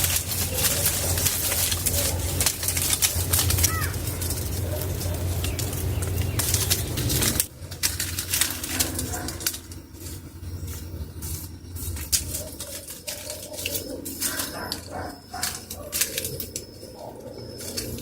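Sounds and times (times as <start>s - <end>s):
low steady rumble: 0.0s - 16.6s
rustling handling noise: 0.0s - 18.0s
bird chirp: 3.6s - 7.4s.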